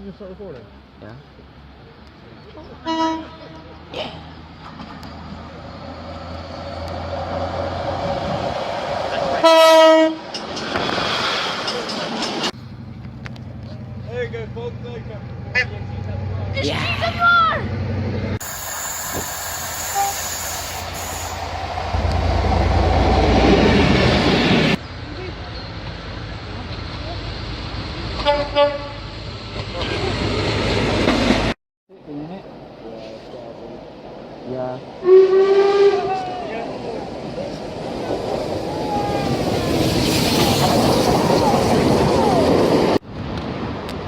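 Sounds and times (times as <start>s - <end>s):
train rumbling past: 1.0s - 31.6s, 32.4s - 44.0s
train horn: 2.8s - 3.6s, 9.4s - 10.4s, 21.9s - 24.0s, 28.2s - 29.1s, 35.0s - 36.3s
short high note: 18.5s - 24.1s.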